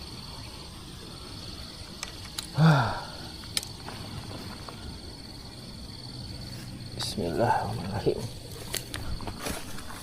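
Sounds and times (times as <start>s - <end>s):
high insect drone: 0.0s - 10.0s
sharp clicks: 1.9s - 2.6s, 3.4s - 3.8s
man sighing: 2.5s - 3.3s.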